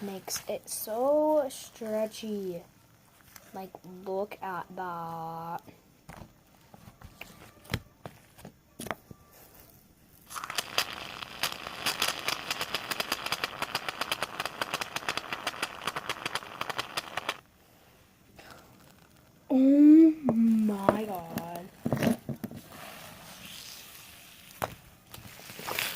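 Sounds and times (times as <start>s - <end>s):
slime squishing and popping: 10.3s - 17.4s.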